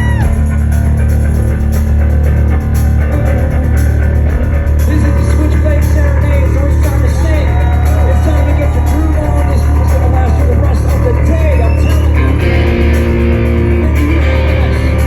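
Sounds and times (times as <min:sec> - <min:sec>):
live rock band playing: 0:00.0 - 0:15.0.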